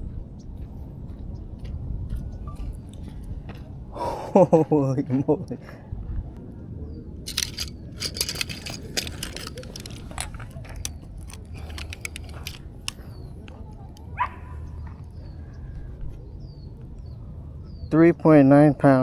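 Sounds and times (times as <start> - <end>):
fishing gear clicks and clinks: 7.3 - 14.2.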